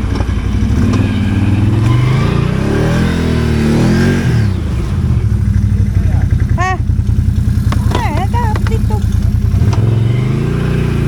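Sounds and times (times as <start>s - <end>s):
atv engine revving: 0.0s - 11.0s.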